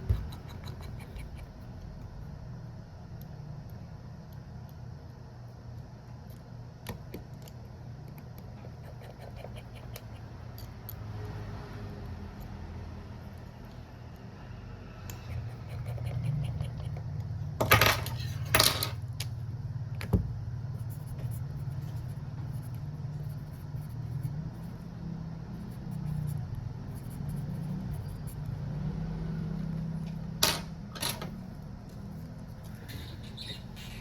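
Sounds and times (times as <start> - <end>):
low hum: 9.8 - 34.0.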